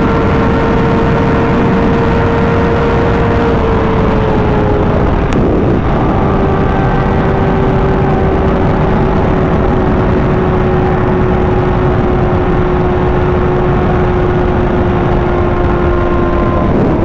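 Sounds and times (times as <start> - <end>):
motorcycle engine cruising: 0.0 - 17.0
steady rushing noise: 0.0 - 17.0.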